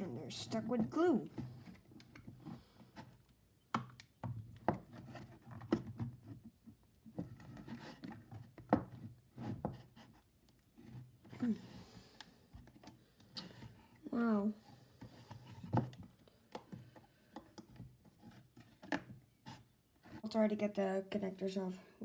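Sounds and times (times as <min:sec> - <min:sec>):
rubbing and scraping: 0:00.0 - 0:03.3, 0:04.7 - 0:11.7.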